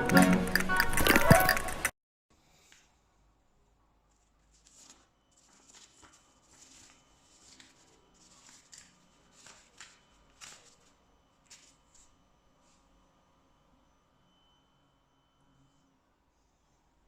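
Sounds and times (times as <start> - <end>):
packaging rustling and scraping: 0.2 - 1.9, 4.1 - 12.1.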